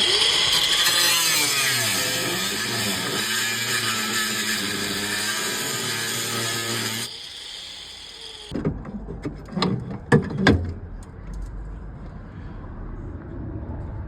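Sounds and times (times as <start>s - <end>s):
knocks and clunks: 8.5s - 11.5s.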